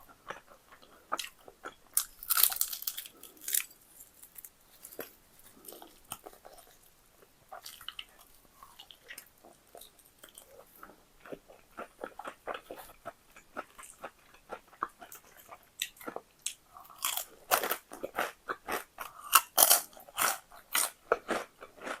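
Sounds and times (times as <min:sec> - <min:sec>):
crunching crispy fried chicken: 0:01.2 - 0:07.0, 0:11.3 - 0:22.0.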